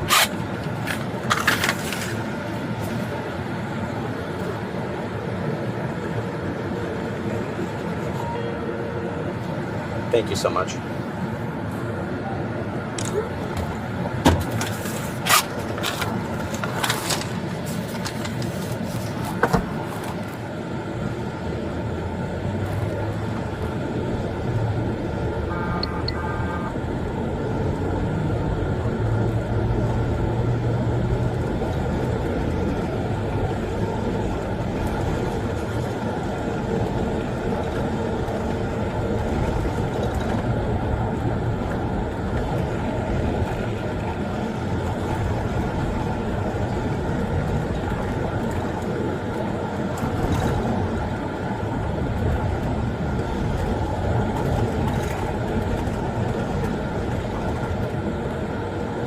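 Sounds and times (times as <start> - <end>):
road and engine noise in car: 0.0 - 59.0
electronic beeping tone: 8.1 - 9.2, 25.5 - 26.8.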